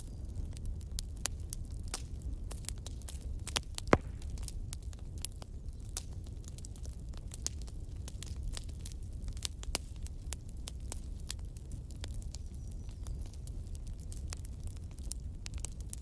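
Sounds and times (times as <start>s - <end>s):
low rumble of flames: 0.0s - 16.0s
wood fire crackling and snapping: 0.0s - 16.0s
loud pop from fire: 2.9s - 5.3s.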